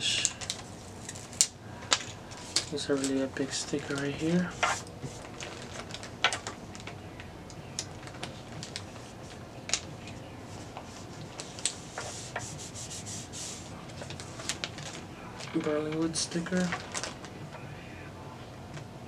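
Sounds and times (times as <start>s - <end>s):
paper ticks and crackles: 0.2s - 12.6s, 13.9s - 17.6s
sticker rubbing on wood: 3.8s - 5.3s, 10.6s - 13.7s.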